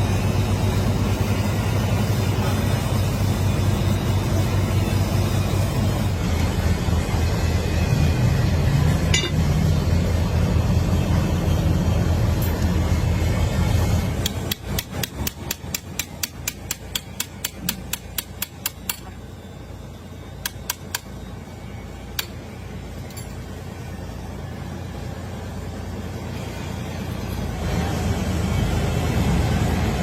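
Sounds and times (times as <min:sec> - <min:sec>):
low steady rumble: 0:00.0 - 0:30.0
hammer striking metal: 0:09.1 - 0:09.4, 0:14.2 - 0:19.2, 0:20.4 - 0:21.1.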